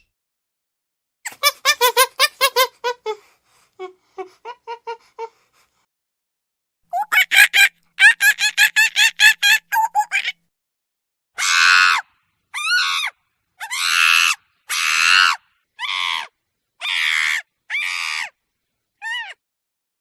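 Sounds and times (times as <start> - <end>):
monkey screeching: 11.4 - 18.4, 19.0 - 19.4.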